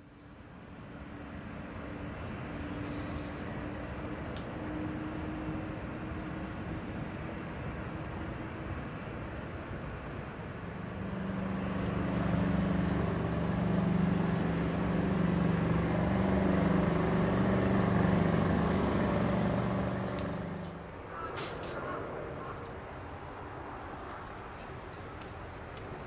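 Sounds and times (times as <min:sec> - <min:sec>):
vehicle engine passing by: 0:10.8 - 0:22.5.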